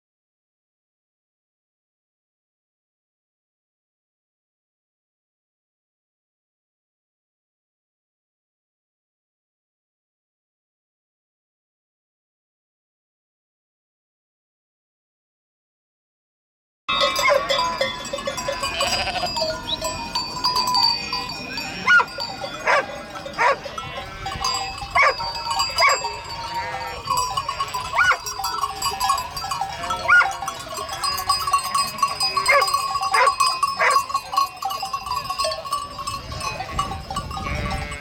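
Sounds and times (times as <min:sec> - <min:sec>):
sheep bleating: 0:16.9 - 0:19.9, 0:20.5 - 0:27.2, 0:29.4 - 0:30.6, 0:37.4 - 0:38.0
livestock bells ringing: 0:16.9 - 0:38.0.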